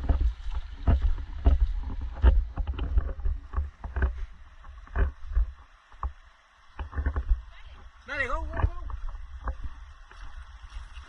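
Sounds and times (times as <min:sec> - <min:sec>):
feet splashing through stream: 0:08.4 - 0:11.0.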